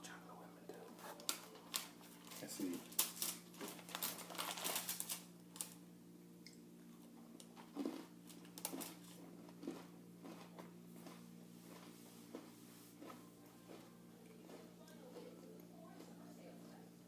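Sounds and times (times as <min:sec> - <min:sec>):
soft chewing: 0:06.5 - 0:17.0.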